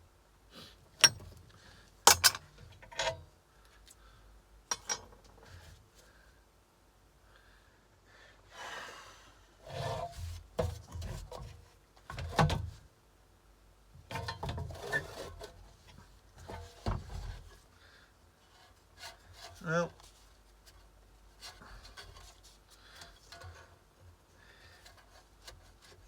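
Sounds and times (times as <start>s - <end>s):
metal tool parts handled on bench: 1.0s - 1.4s, 2.1s - 3.2s, 4.7s - 5.3s.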